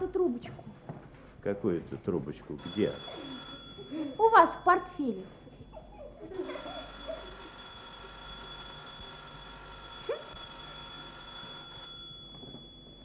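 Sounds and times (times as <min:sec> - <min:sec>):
telephone bell ringing: 0:02.6 - 0:13.0.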